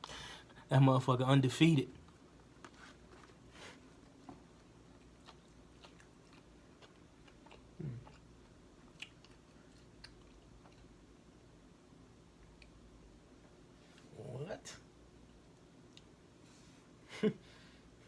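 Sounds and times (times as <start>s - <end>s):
man chewing with wet mouth clicks: 4.0s - 11.2s, 12.4s - 12.9s, 15.2s - 16.2s.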